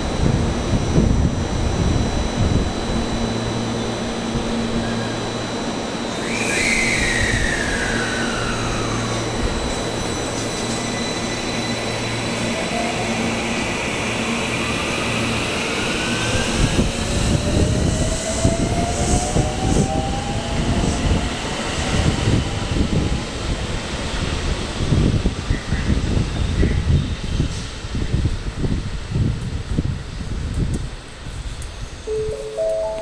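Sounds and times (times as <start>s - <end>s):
electric train motors whining: 1.0s - 16.9s.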